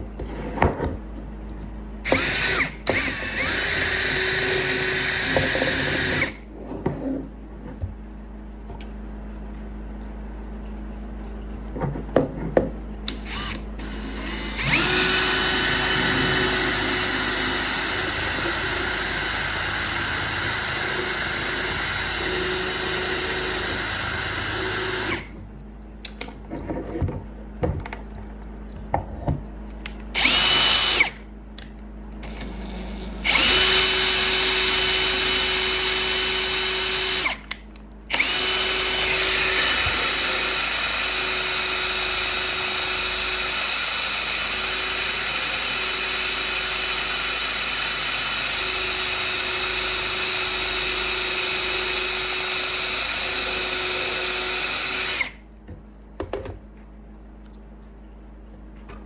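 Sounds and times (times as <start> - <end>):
power drill whining: 2.0 - 6.5, 13.1 - 25.4, 30.2 - 31.2, 32.2 - 55.4.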